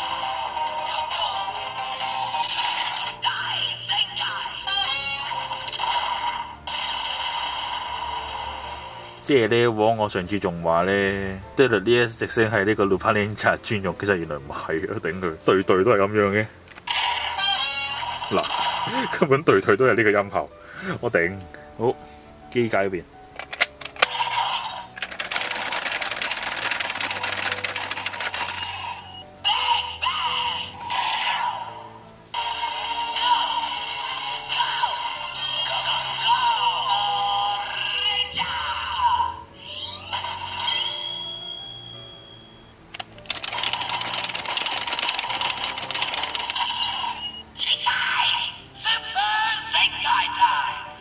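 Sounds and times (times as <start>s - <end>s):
synthesized voice from toy speaker: 0.2s - 7.5s, 16.9s - 18.7s, 24.0s - 31.8s, 32.4s - 41.2s, 43.3s - 51.0s
electronic rattling run: 25.0s - 28.8s, 43.2s - 46.6s.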